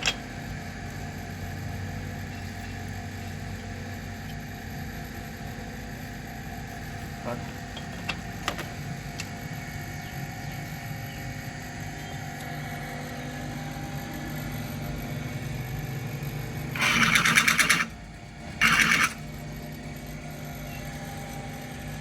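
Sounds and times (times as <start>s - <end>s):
harsh rapidly pulsing bursts: 16.7s - 18.0s, 18.6s - 19.2s.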